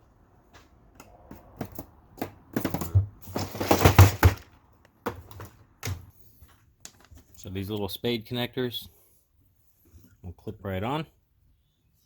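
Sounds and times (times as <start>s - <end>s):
small parts and tools clattering: 1.3s - 6.1s, 6.8s - 7.4s.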